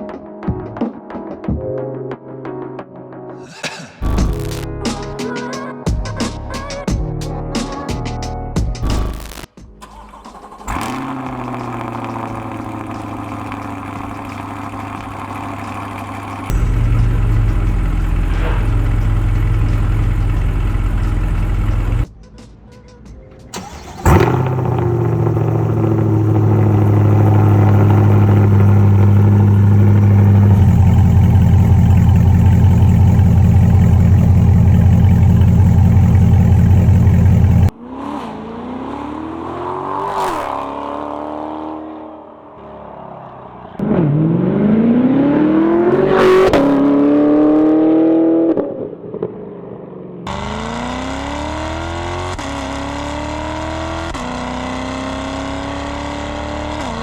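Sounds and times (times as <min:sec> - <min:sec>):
car engine idling and revving: 0:09.9 - 0:22.1, 0:23.5 - 0:57.0.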